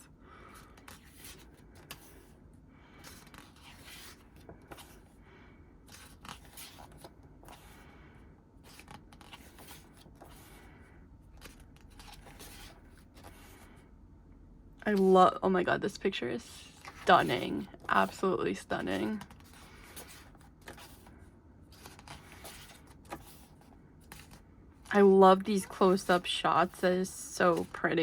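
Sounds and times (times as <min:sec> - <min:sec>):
soft scraping of pages: 0:00.5 - 0:05.2, 0:05.8 - 0:07.9, 0:08.6 - 0:13.8, 0:16.4 - 0:28.0
pages rustling: 0:00.6 - 0:02.3, 0:03.0 - 0:05.1, 0:05.8 - 0:07.8, 0:08.6 - 0:10.7, 0:11.3 - 0:13.7, 0:16.6 - 0:24.4, 0:25.0 - 0:28.0.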